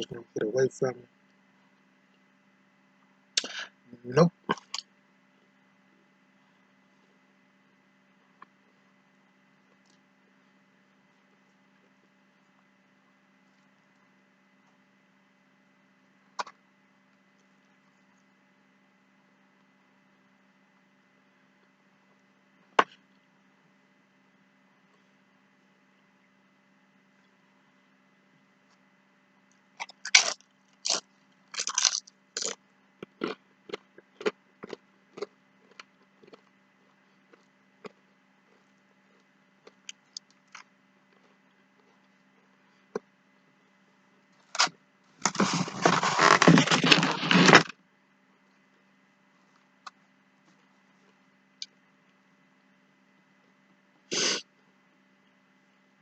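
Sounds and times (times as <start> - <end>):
crunching of chewing nachos: 4.5 - 4.8, 29.8 - 42.6, 44.5 - 47.7.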